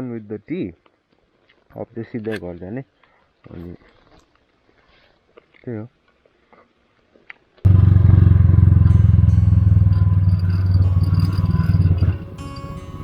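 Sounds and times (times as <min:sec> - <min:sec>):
motorcycle engine running: 0:07.7 - 0:13.0.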